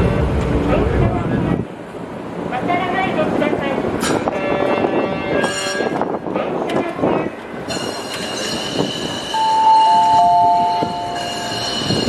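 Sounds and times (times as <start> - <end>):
streetcar whine: 0.0 - 12.0
two-tone horn: 4.3 - 8.2, 8.8 - 12.0.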